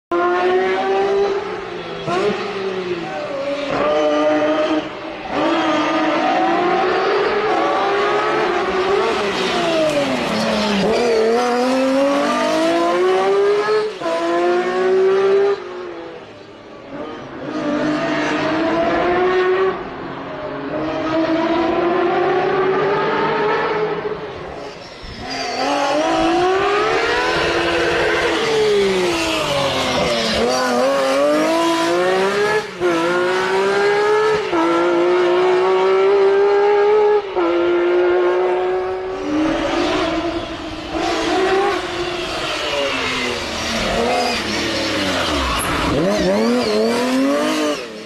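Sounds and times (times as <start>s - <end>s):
car engine revving hard: 25.6s - 48.0s.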